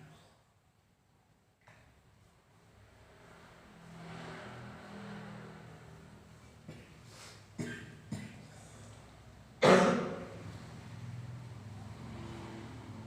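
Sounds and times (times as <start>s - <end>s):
person coughing: 7.6s - 8.8s, 9.6s - 10.4s.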